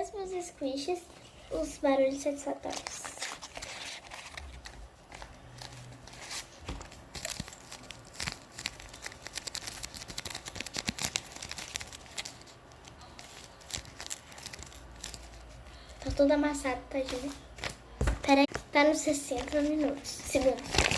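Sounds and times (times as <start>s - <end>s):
squishy toys crinkling: 2.6s - 15.6s, 19.3s - 20.9s.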